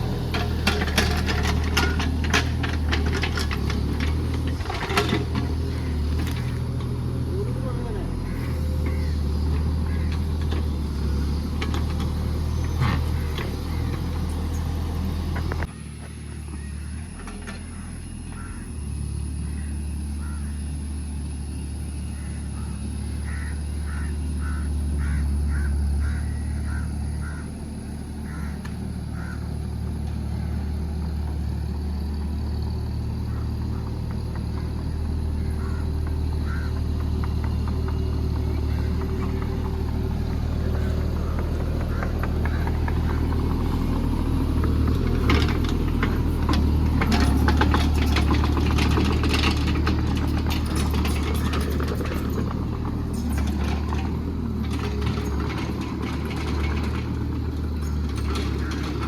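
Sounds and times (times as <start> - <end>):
excavator engine running: 0.0 - 59.0
clattering: 0.2 - 6.8.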